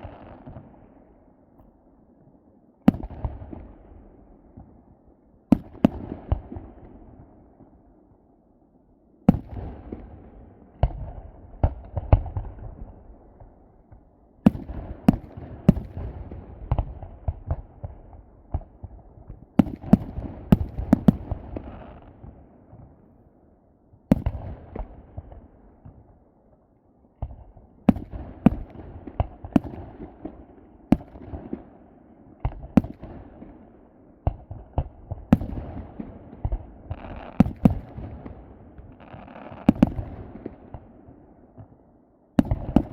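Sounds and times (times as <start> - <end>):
fireworks bangs: 35.3 - 40.9, 42.4 - 42.9.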